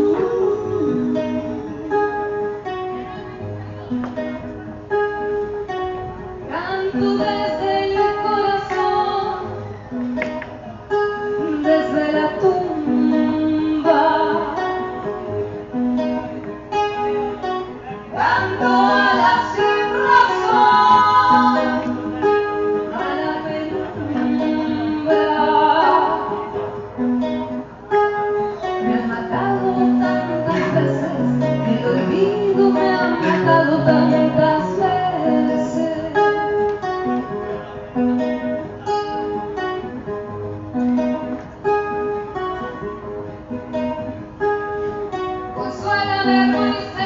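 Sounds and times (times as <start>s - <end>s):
woman singing: 0.0s - 2.4s, 6.5s - 9.5s, 11.4s - 15.0s, 18.2s - 22.1s, 22.8s - 26.6s, 28.8s - 36.6s, 45.6s - 47.0s
acoustic guitar playing: 0.0s - 47.0s.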